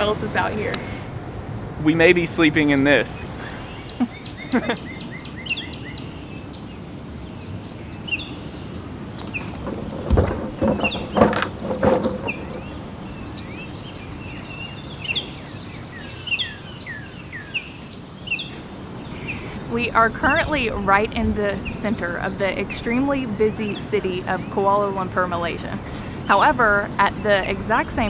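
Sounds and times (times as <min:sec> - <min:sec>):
insects hissing: 0:00.0 - 0:05.1, 0:12.7 - 0:20.7
distant city traffic: 0:00.0 - 0:07.0, 0:11.1 - 0:28.0
birds chirping: 0:00.0 - 0:28.0.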